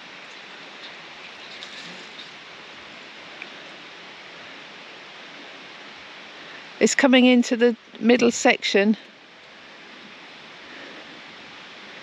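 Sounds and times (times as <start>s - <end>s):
water rushing along a metal gutter: 0.0s - 7.2s.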